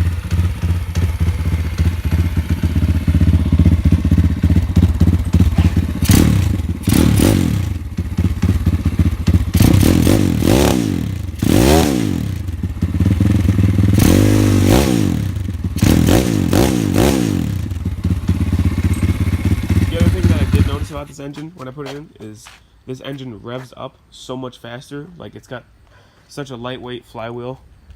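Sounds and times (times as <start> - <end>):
motorbike engine revving: 0.0 - 21.1.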